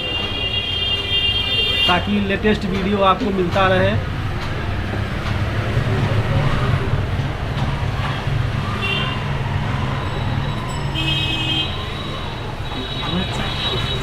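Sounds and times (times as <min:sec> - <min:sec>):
road traffic rumble: 0:00.0 - 0:14.0.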